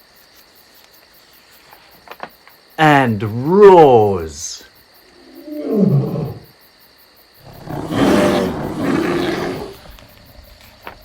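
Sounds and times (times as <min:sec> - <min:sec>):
lion roar: 0:05.2 - 0:06.5, 0:07.4 - 0:10.4.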